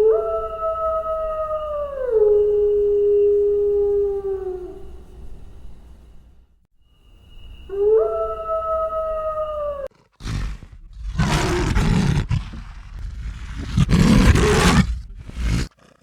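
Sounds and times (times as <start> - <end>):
animal howl-like call: 0.0 - 4.9, 7.7 - 15.7
large animal roaring: 9.9 - 16.0.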